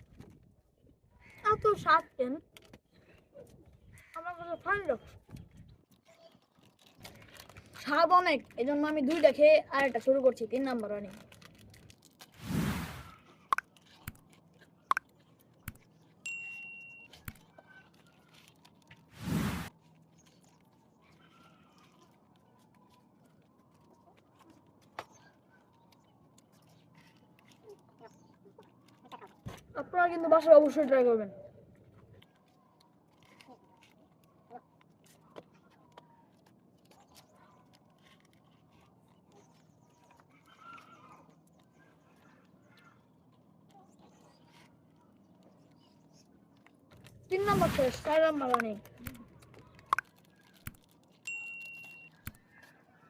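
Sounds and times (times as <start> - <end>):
crunchy snack being chewed: 5.8 - 7.9, 10.5 - 16.2, 17.1 - 29.5, 31.8 - 47.2, 48.5 - 53.0
faint animal call: 21.0 - 22.2, 40.2 - 43.1.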